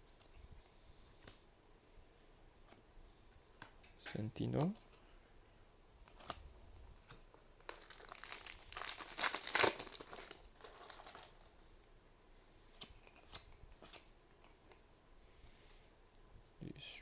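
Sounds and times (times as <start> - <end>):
foil wrapper crinkling and tearing: 7.6 - 11.5.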